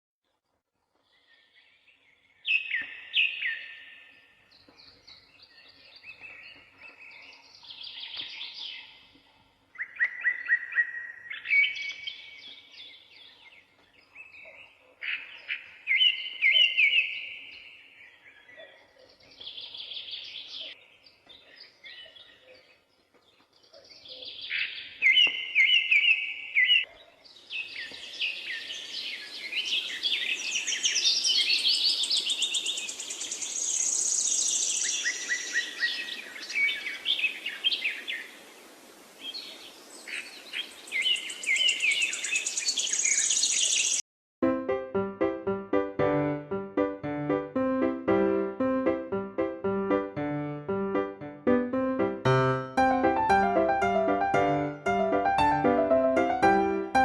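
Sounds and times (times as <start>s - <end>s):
birds singing: 1.0s - 44.0s
steady background hiss: 32.8s - 41.5s.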